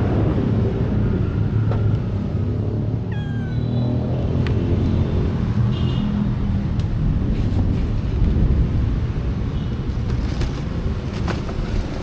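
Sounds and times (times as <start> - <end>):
cat meowing: 3.1 - 4.0.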